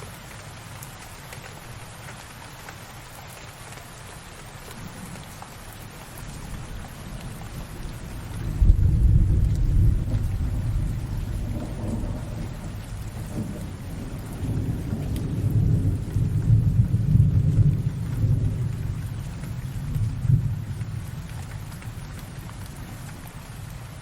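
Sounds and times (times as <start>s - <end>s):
rain falling: 0.0s - 24.0s
rolling thunder rumble: 6.2s - 21.7s.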